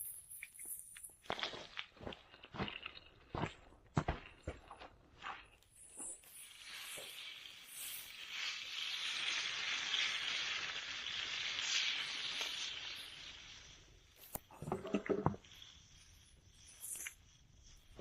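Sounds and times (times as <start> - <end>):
food sizzling in a pan: 5.7 - 18.0.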